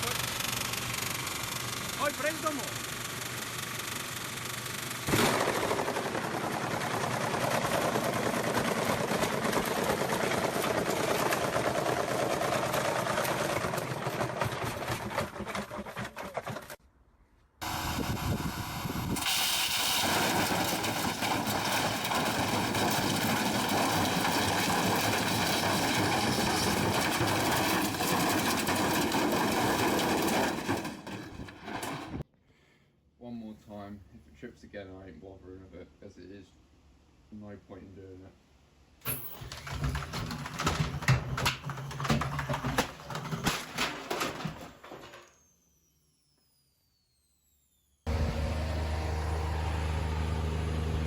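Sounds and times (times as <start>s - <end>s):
washing machine spinning and banging: 6.3s - 16.6s, 19.2s - 32.2s, 39.1s - 45.2s.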